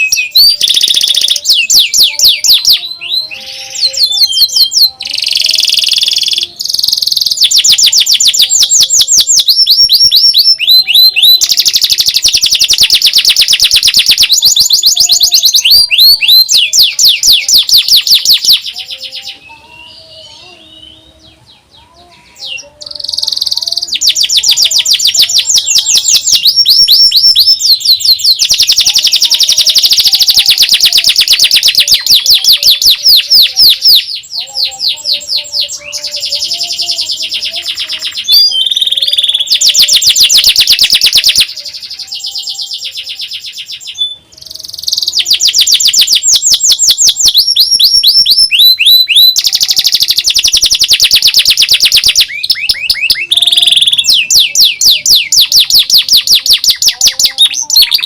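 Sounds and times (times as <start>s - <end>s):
canary trilling song: 0.0s - 58.0s
canary twittering: 0.0s - 58.0s.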